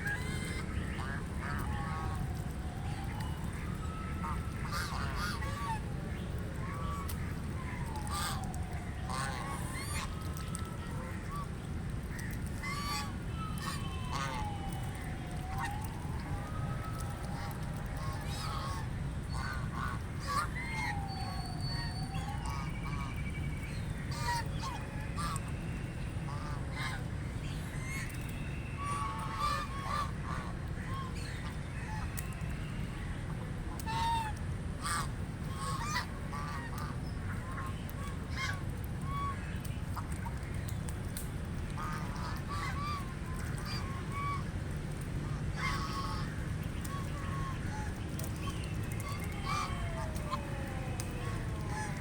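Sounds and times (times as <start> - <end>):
low background rumble: 0.0 - 52.0
ducks quacking: 4.2 - 5.8, 12.2 - 14.8, 17.3 - 21.0, 24.1 - 25.5, 28.8 - 32.3, 33.7 - 40.5, 41.7 - 44.7, 45.3 - 52.0.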